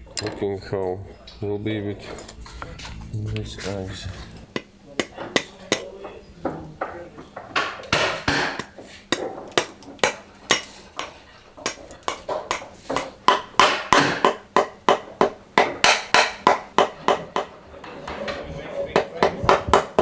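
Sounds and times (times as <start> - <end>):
hammering on wood: 4.5 - 20.0.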